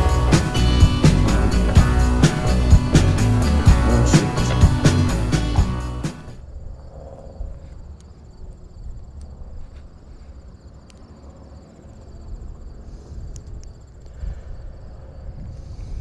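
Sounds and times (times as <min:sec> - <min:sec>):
insects trilling: 0:06.4 - 0:16.0
wind rumbling on microphone: 0:12.1 - 0:16.0
faint clicks: 0:13.3 - 0:14.2.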